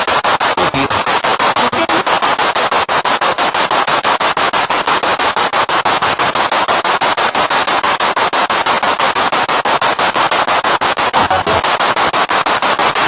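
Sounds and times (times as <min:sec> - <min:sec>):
pulsing radio static: 0:00.0 - 0:13.0.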